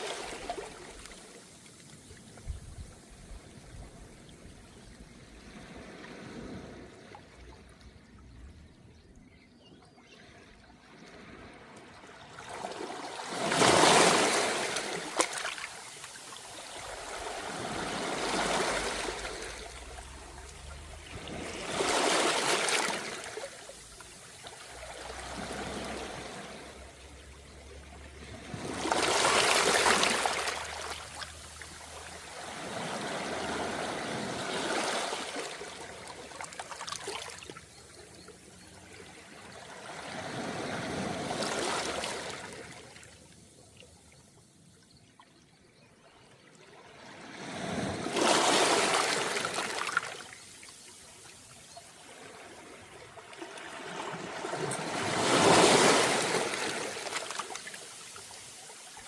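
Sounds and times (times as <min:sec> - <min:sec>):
waves washing over pebbles: 0:00.0 - 0:02.4, 0:11.2 - 0:37.5, 0:39.4 - 0:42.9, 0:47.3 - 0:59.0.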